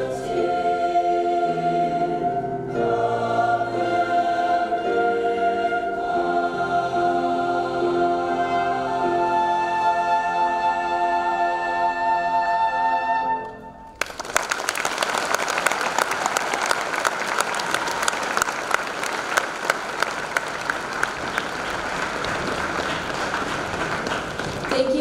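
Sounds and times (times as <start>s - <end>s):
choir holding a chord: 0.0s - 13.8s
audience applauding: 13.9s - 25.0s.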